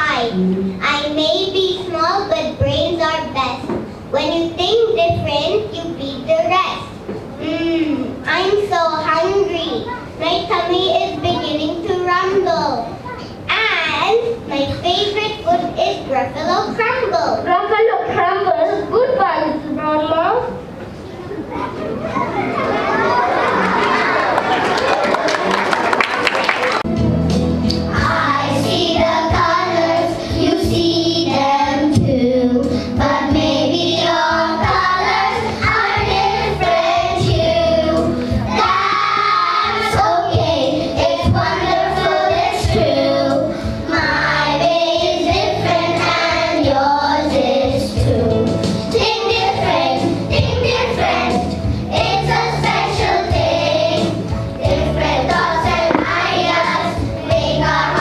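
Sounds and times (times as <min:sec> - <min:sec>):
music with steady beat: 0:26.9 - 0:32.3
children singing: 0:27.9 - 0:58.0.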